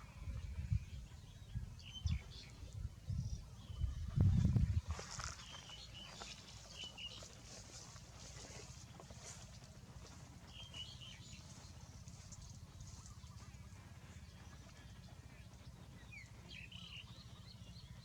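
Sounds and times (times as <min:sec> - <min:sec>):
small birds chirping: 0:00.0 - 0:18.0.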